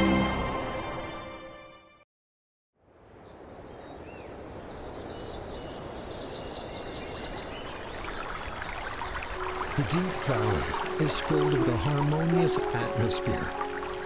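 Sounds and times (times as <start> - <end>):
birds chirping: 3.2 - 14.0.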